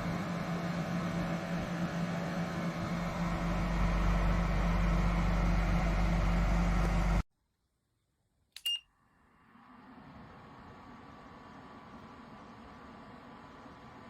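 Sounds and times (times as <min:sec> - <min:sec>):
fan heater running: 0:00.0 - 0:07.2, 0:09.1 - 0:14.0
short high beep: 0:08.6 - 0:08.9.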